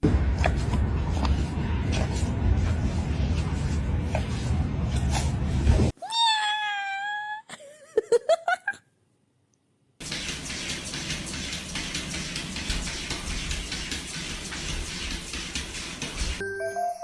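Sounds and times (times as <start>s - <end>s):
noisy rush: 0.0s - 5.9s.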